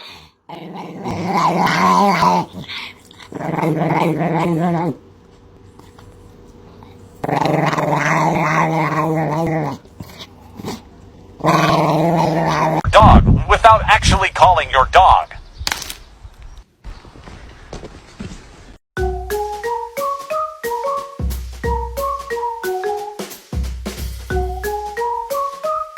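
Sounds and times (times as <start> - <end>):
dog growling: 0.0 - 5.0, 5.7 - 12.9.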